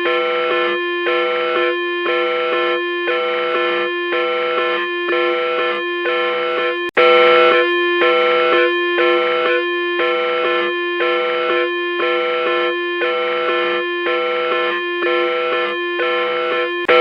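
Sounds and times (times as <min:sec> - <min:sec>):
electronic alarm tone: 0:00.0 - 0:17.0.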